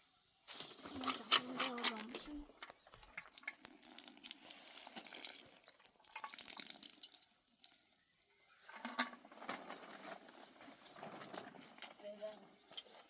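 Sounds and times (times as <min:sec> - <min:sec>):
light rain hiss: 0:00.0 - 0:08.7
water dripping: 0:02.6 - 0:08.3.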